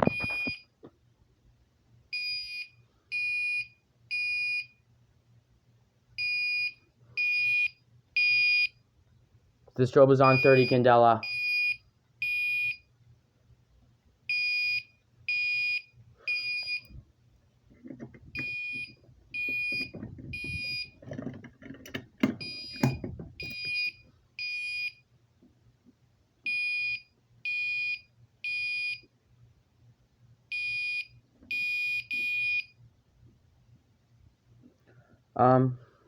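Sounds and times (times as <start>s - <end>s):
fire alarm horn beeping: 10.2s - 12.8s, 22.4s - 24.9s.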